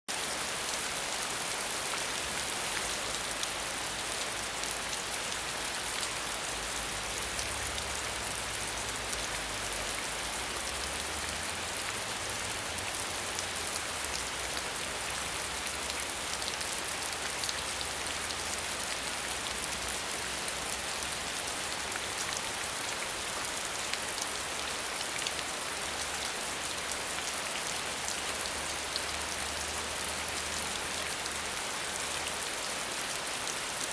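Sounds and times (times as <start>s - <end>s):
steady rain falling: 0.1s - 33.9s.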